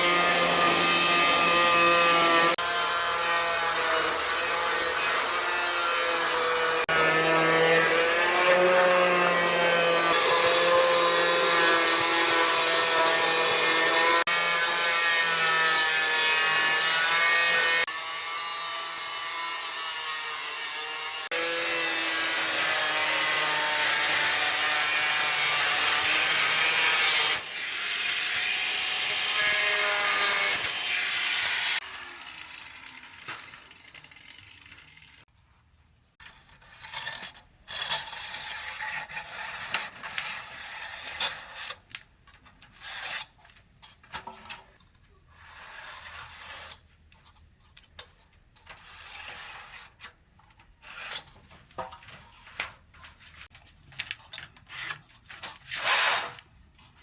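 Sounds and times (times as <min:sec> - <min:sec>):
scraping and rubbing: 0:48.6 - 0:50.2, 0:50.8 - 0:57.0.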